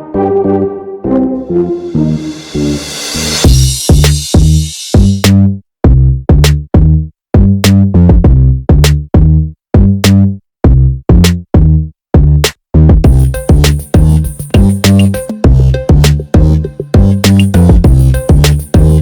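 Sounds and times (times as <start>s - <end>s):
electronic music with drum-machine beat: 0.0s - 5.3s, 13.0s - 19.0s.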